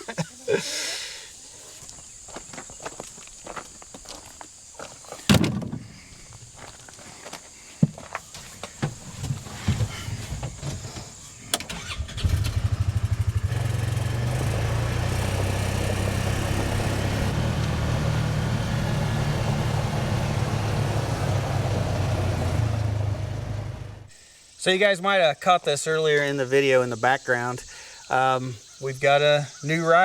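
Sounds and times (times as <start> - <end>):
engine cranking and idling: 11.5 - 24.1.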